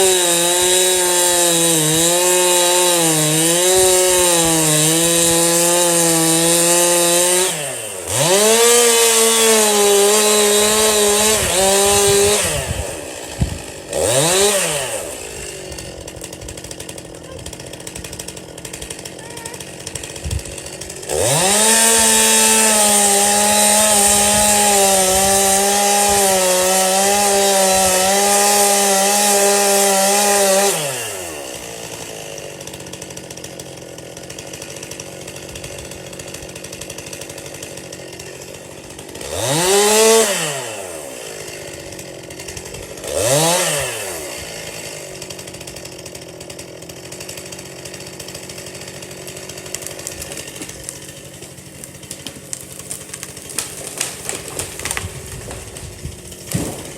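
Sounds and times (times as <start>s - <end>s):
chainsaw engine revving and idling: 0.0s - 56.9s.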